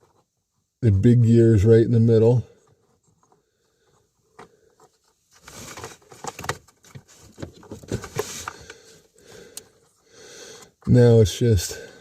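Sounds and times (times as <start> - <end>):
rustling: 2.4 - 10.1.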